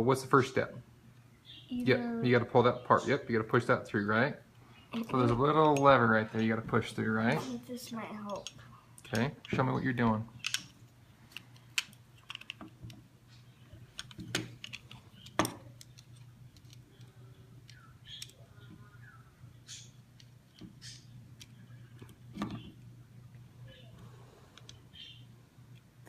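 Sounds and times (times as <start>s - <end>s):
pistol parts clicking: 10.4s - 12.9s, 13.9s - 18.4s.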